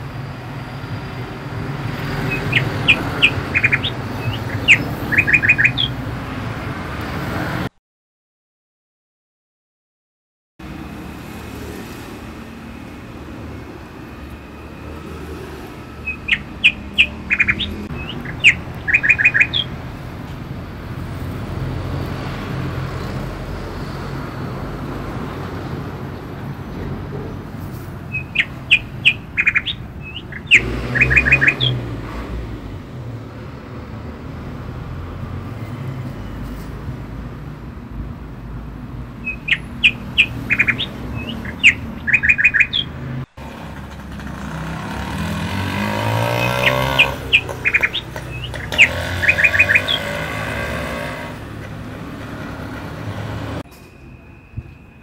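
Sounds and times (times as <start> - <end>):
bird chirping: 1.9 - 6.0, 15.4 - 20.0, 28.0 - 31.9, 39.2 - 43.0, 44.9 - 51.6.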